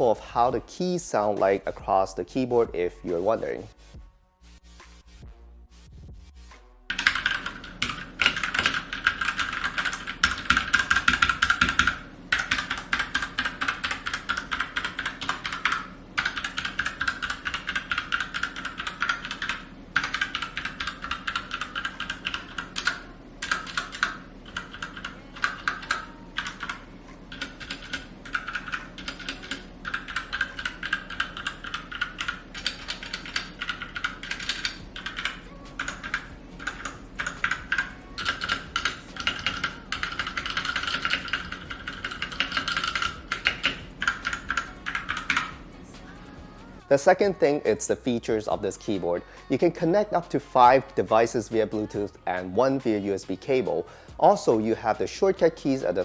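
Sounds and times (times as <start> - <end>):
mechanical keyboard typing: 6.9 - 45.6.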